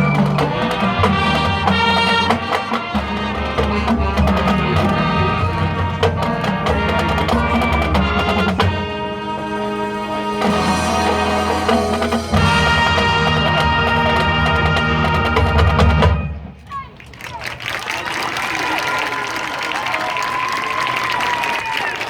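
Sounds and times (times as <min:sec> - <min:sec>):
marching band playing: 0:00.0 - 0:17.0
drum and percussion hits: 0:10.5 - 0:16.4.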